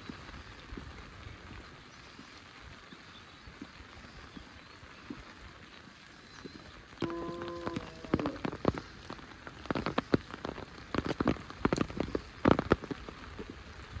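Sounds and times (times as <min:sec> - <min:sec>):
faint steady hiss: 0:00.0 - 0:14.0
heavy raindrops tapping: 0:00.0 - 0:14.0
short pitched tone: 0:07.0 - 0:08.4.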